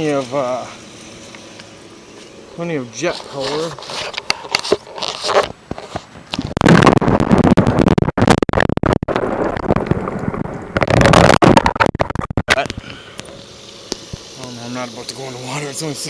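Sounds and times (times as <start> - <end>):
water gushing from a jet: 0.0 - 5.8, 12.6 - 16.0.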